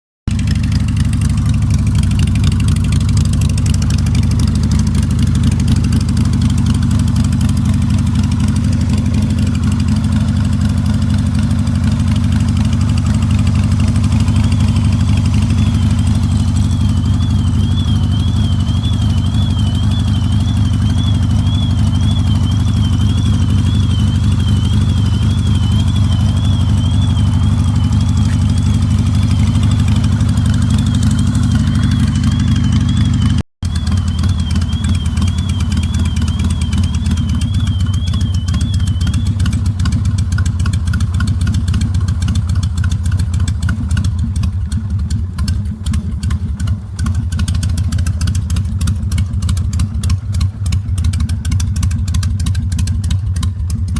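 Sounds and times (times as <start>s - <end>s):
motorcycle engine idling: 0.3s - 53.9s
car alarm warbling: 12.3s - 39.4s.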